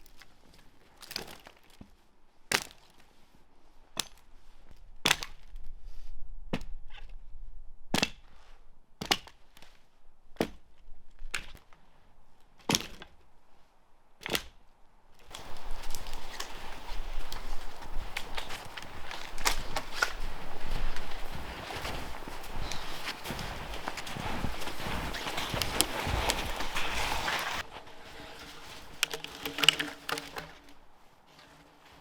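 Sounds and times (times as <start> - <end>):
dry firewood cracking: 15.3 - 30.9.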